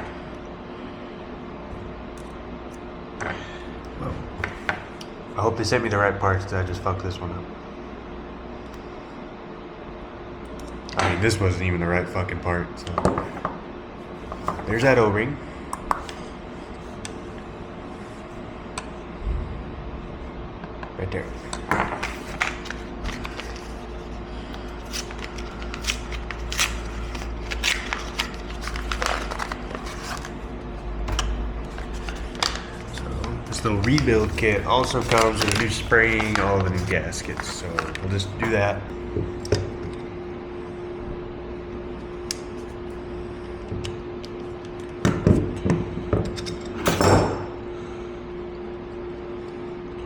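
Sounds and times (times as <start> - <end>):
steady low hum: 0.0 - 50.0.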